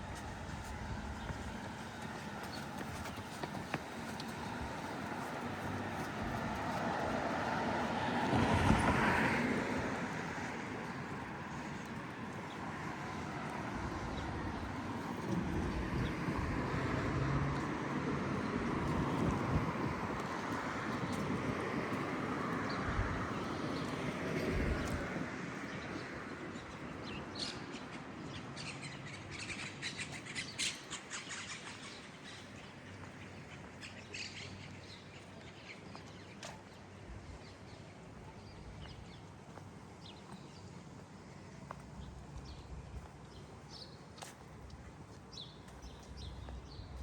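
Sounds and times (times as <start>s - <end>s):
traffic noise: 0.0s - 47.0s
birds chirping: 40.0s - 47.0s.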